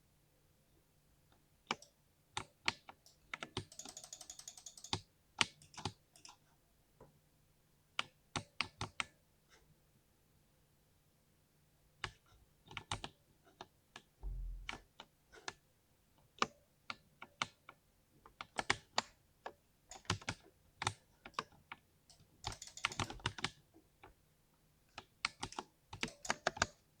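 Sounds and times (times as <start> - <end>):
mechanical keyboard typing: 1.7 - 6.4, 19.9 - 23.6, 25.0 - 26.9
low thump: 14.2 - 14.8.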